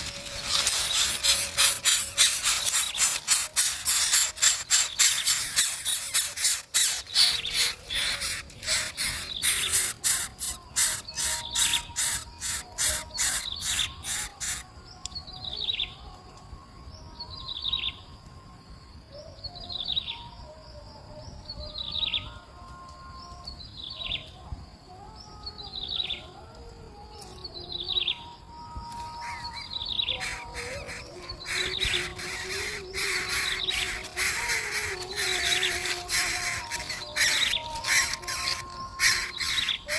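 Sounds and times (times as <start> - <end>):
rapid rattling: 0.0 - 14.6, 30.2 - 39.9
faint bird calls: 0.0 - 14.7, 28.8 - 39.9.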